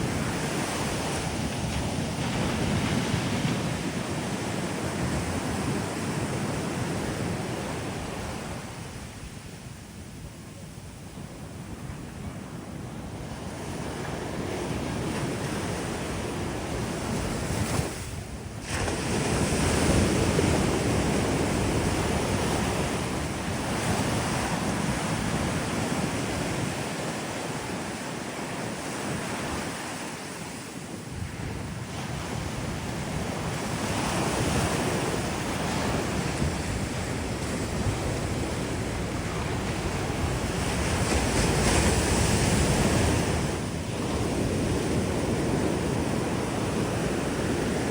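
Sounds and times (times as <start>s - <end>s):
ocean surf breaking on beach: 0.0s - 47.9s
wind buffeting microphone: 0.0s - 47.9s.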